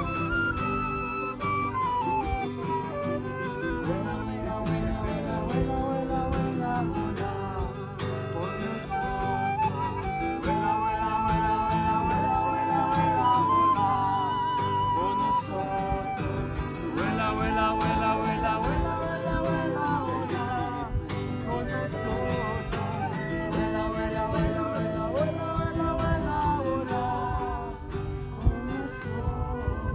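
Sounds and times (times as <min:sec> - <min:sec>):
instrumental accompaniment: 0:00.0 - 0:05.6
person singing with vibrato: 0:03.8 - 0:29.9.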